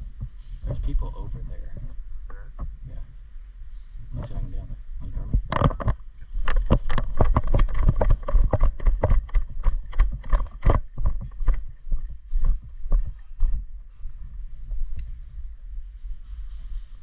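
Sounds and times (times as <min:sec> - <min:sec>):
low rumble: 0:00.0 - 0:17.0
running footsteps: 0:00.0 - 0:17.0
gear and camera jostling: 0:05.0 - 0:17.0.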